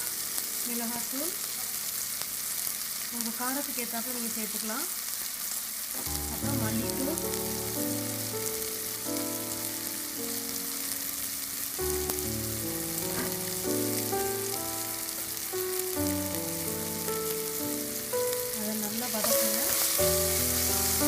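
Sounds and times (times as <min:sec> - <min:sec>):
food sizzling in hot oil: 0:00.0 - 0:21.0
background music melody: 0:06.0 - 0:21.0.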